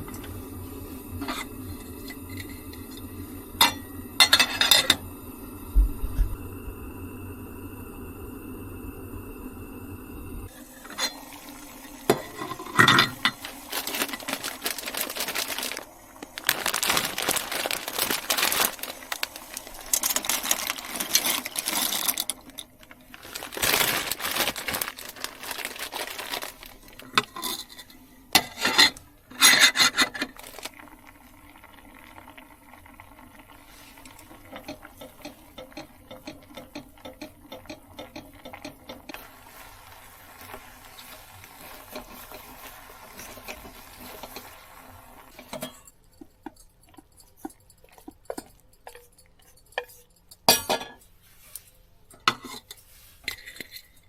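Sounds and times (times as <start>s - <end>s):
kitchenware clinking: 1.2s - 5.0s, 11.9s - 15.8s, 16.4s - 30.7s, 45.3s - 51.1s
water running into a sink: 10.5s - 27.1s, 30.2s - 45.6s
light steady patter: 33.4s - 54.0s.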